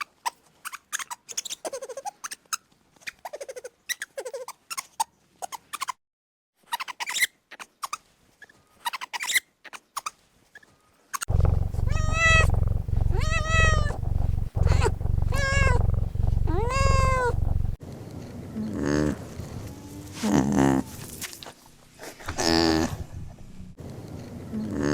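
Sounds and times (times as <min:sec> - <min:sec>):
faint clicks and chirps: 0:11.3 - 0:17.8
steady low rumble: 0:11.3 - 0:17.8.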